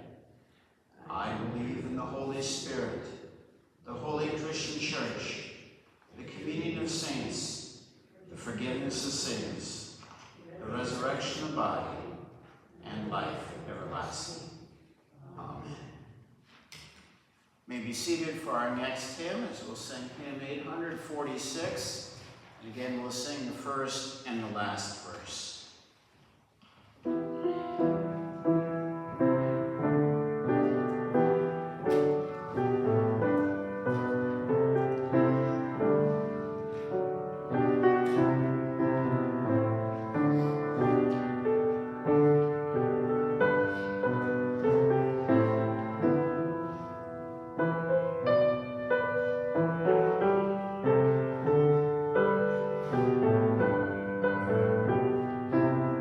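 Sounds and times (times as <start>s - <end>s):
piano playing hymn chords: 6.2s - 7.8s, 27.0s - 56.0s.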